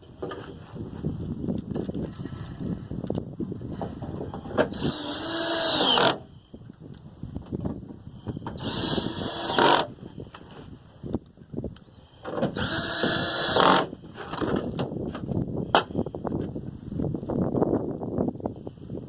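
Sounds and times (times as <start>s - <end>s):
power driver driving screw: 4.6s - 6.3s, 8.5s - 9.9s, 12.5s - 14.4s.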